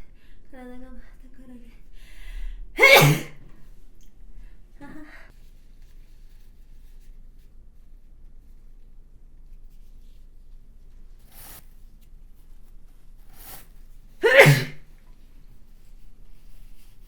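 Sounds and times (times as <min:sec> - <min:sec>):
faint breaths: 0:01.8 - 0:02.8
woman sneezing: 0:02.8 - 0:03.4, 0:14.2 - 0:14.8.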